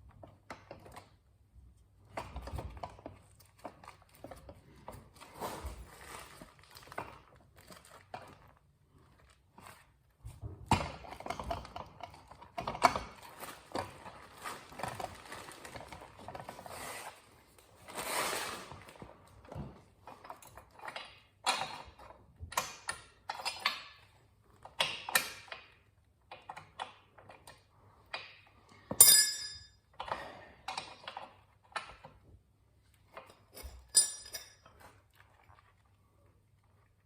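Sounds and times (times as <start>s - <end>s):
metal tools clinking and knocking: 28.9s - 31.0s, 33.3s - 34.7s
sharp ringing metallic ping: 29.0s - 29.8s.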